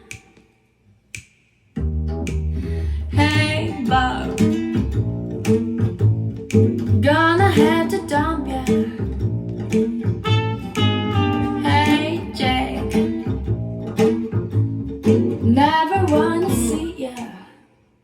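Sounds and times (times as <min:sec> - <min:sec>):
deep bass line: 0:01.8 - 0:16.9
plucked guitar: 0:01.8 - 0:17.3
person singing: 0:02.7 - 0:04.8, 0:07.0 - 0:09.2, 0:11.3 - 0:13.3, 0:15.4 - 0:17.5.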